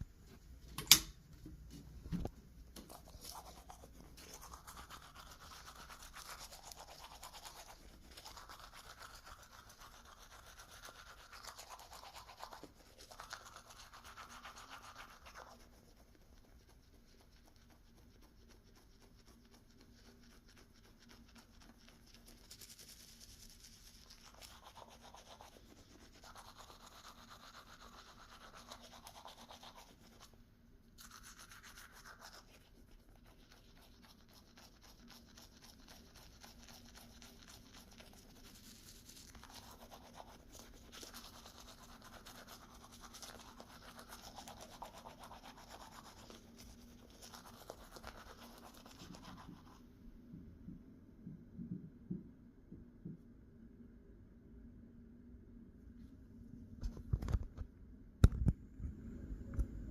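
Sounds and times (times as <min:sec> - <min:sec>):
sharp click: 0:00.8 - 0:01.2.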